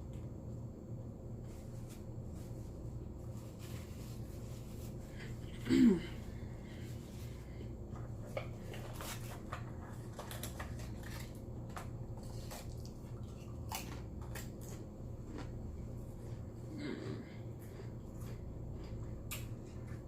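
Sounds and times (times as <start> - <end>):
steady low hum: 0.0 - 20.0
chewing with mouth clicks: 12.2 - 20.0.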